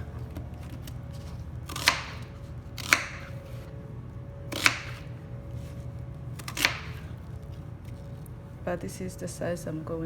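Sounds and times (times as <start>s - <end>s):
steady low hum: 0.0s - 10.0s
knife chopping on cutting board: 0.3s - 3.6s, 4.5s - 5.1s, 6.4s - 7.1s.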